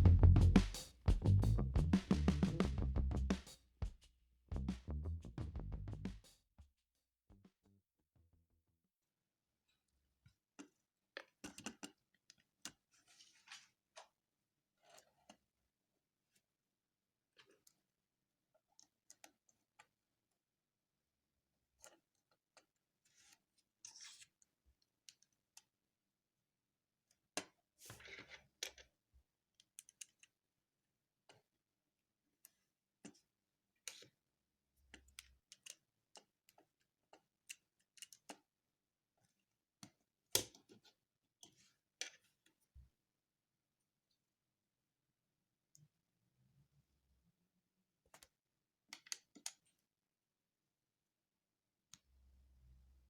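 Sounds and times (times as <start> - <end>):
faint clicks and handling noises: 10.3 - 14.2, 29.6 - 30.4, 34.8 - 38.5, 48.1 - 49.8.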